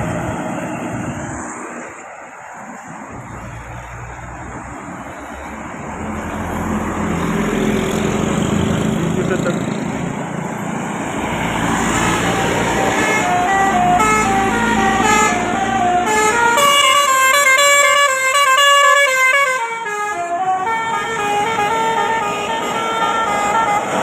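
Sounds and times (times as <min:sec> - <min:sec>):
bus engine rumble: 0:00.0 - 0:24.0
road noise: 0:00.0 - 0:24.0
bus multi-tone horn tune: 0:11.9 - 0:24.0.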